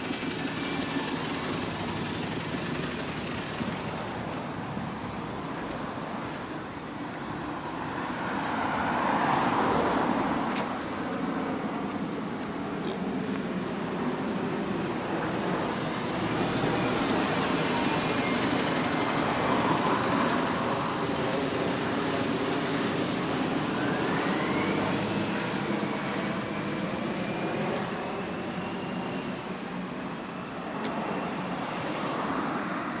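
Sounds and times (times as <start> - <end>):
bus engine running: 0.0 - 6.8, 10.0 - 33.0
road traffic: 0.0 - 33.0
high whine: 12.6 - 32.4.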